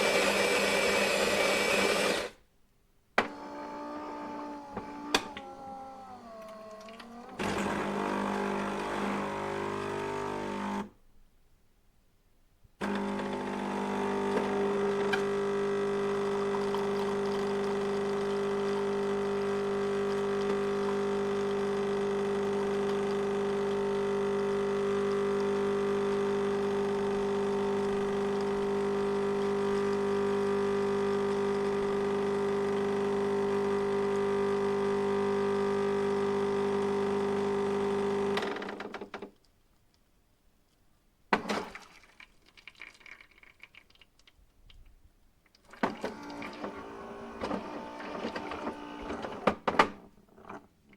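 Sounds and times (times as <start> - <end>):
electric coffee grinder humming: 0.0 - 2.4, 6.4 - 10.9, 12.8 - 38.7, 45.8 - 49.6.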